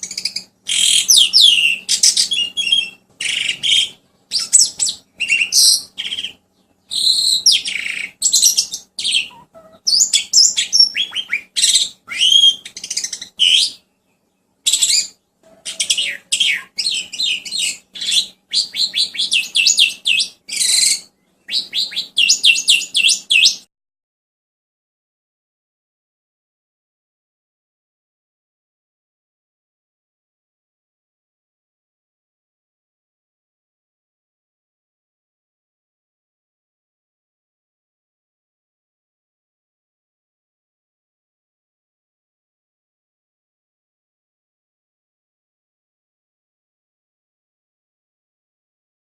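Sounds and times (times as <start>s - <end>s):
songbird singing: 0.0s - 23.7s.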